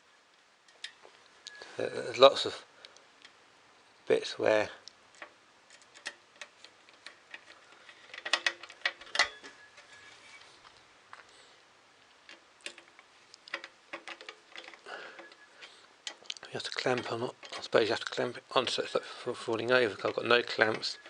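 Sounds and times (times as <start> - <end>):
small parts clicking together: 4.8 - 9.9, 12.2 - 18.8.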